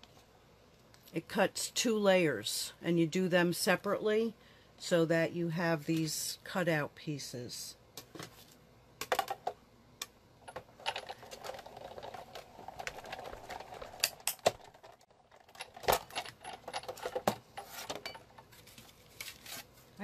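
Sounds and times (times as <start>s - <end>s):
paper rustling: 18.5s - 20.0s.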